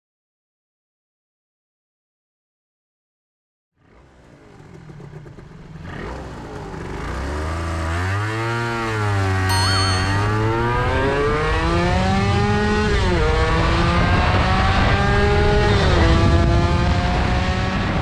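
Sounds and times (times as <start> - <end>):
motorcycle engine accelerating: 3.8 - 9.5, 11.2 - 18.0.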